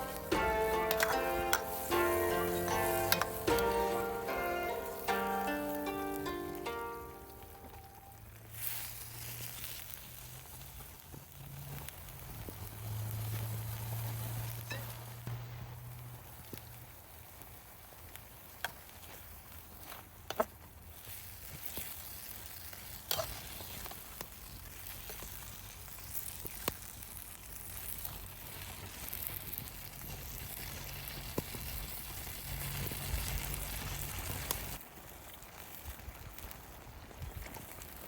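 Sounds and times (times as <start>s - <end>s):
utensil tapping a pan: 0.0s - 7.2s
food sizzling in a pan: 0.0s - 38.0s.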